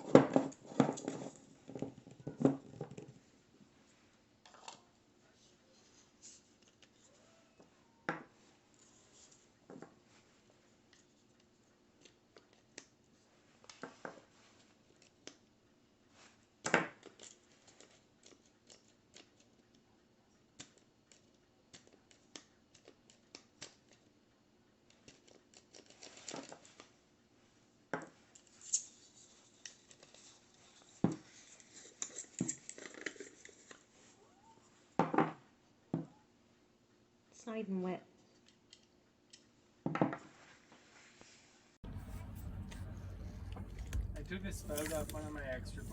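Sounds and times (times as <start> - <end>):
objects being handled: 0.0 - 12.9, 24.8 - 27.0, 28.0 - 35.4, 38.2 - 45.9.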